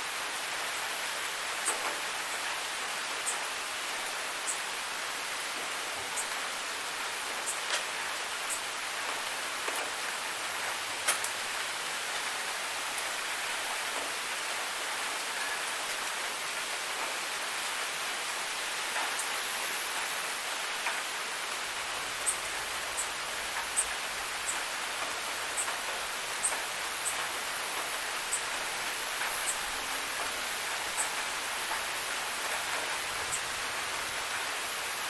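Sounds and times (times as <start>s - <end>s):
soft rain falling: 0.0s - 35.0s
cricket chirps: 4.4s - 4.7s, 6.1s - 6.5s, 7.3s - 7.7s, 22.1s - 34.0s.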